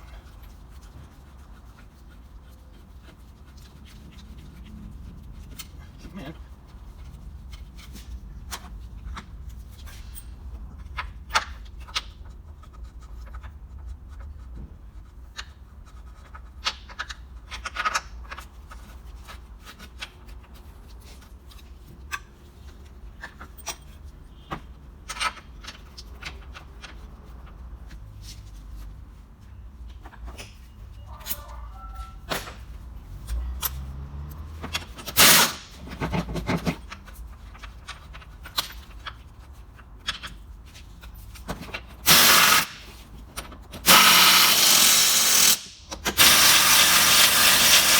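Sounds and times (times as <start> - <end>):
hand tools clicking and knocking: 31.3 - 47.9.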